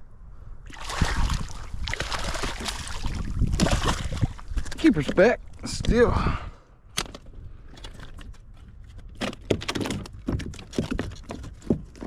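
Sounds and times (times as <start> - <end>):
clicks taps and knocks handling gear: 4.5 - 6.0, 6.9 - 12.0.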